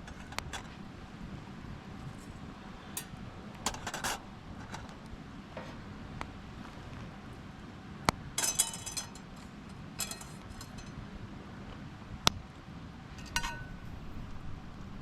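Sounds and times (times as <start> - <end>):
cookware clinking: 8.4 - 11.0, 13.2 - 13.9.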